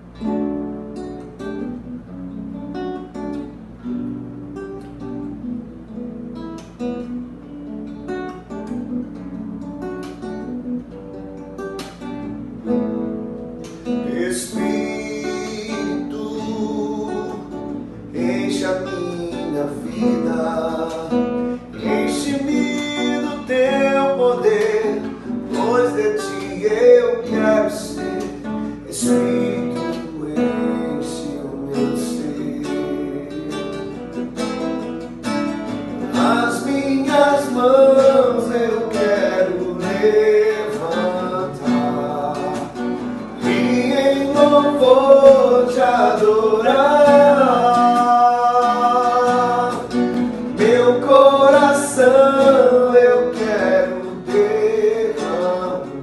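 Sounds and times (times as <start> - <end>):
acoustic guitar strumming: 0.0 - 56.0.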